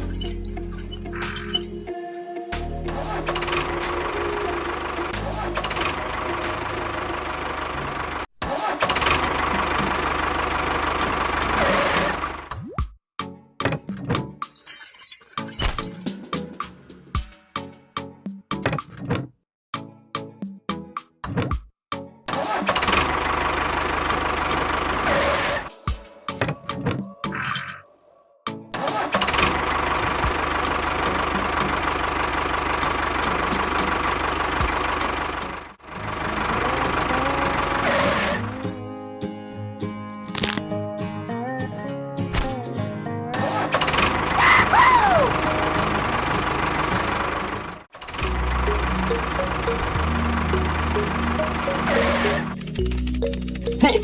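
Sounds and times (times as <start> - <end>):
engine running: 2.8 - 12.5, 22.3 - 27.4, 28.8 - 38.8, 43.4 - 54.0.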